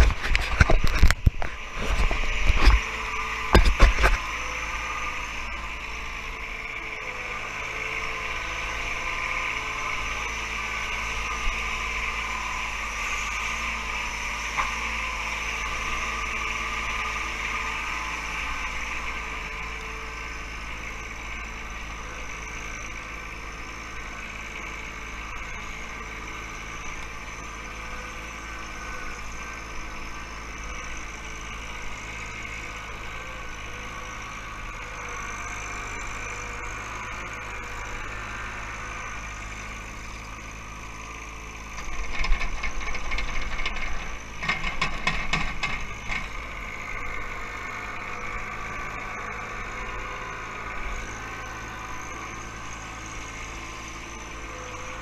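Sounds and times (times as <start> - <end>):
loud rattling clatter: 0.0 - 4.5, 40.8 - 48.6
tractor diesel engine running: 0.0 - 55.0.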